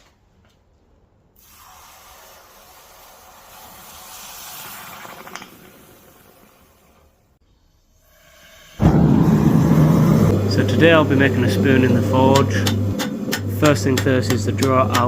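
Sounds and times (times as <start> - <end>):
hiss: 1.4 - 10.3.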